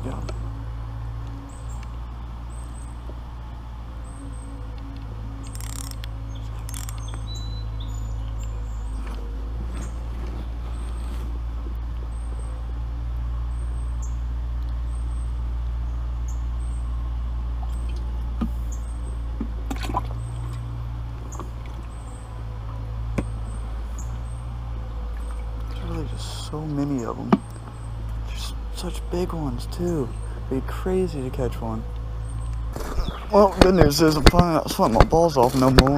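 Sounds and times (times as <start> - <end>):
bird chirping: 0.0 - 11.3, 13.5 - 17.0, 17.6 - 19.3, 20.1 - 35.9
low outdoor rumble: 0.0 - 35.9
sharp clicks: 4.8 - 7.4.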